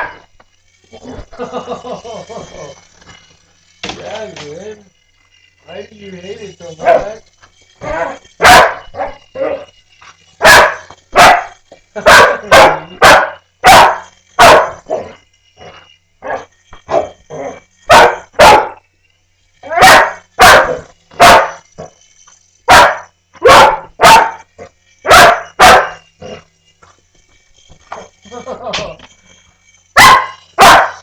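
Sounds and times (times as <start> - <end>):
dog barking: 6.8 - 7.1, 7.9 - 9.7, 10.4 - 15.1, 17.9 - 18.8, 19.7 - 21.6, 22.7 - 24.4, 25.1 - 26.0, 30.0 - 31.0.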